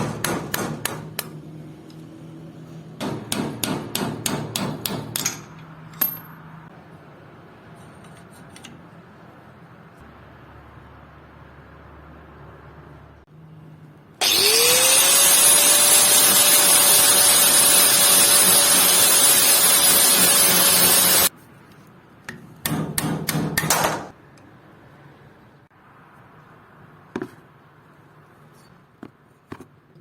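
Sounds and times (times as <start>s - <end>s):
power tool grinding whine: 14.2s - 21.3s.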